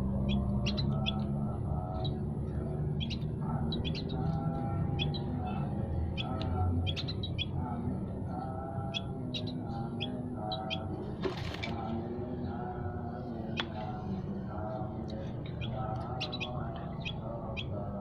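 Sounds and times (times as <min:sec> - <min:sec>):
songbirds chirping: 0:00.0 - 0:18.0.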